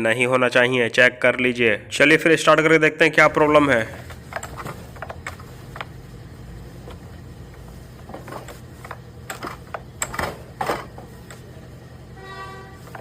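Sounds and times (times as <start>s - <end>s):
recoil starter clicks and knocks: 4.0s - 6.0s, 6.8s - 11.4s.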